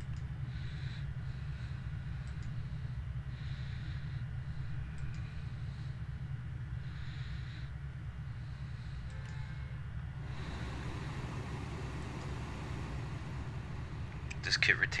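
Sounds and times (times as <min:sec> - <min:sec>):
faint ticks: 0:02.2 - 0:02.6, 0:04.9 - 0:05.4
car engine rumble from inside: 0:10.0 - 0:15.0.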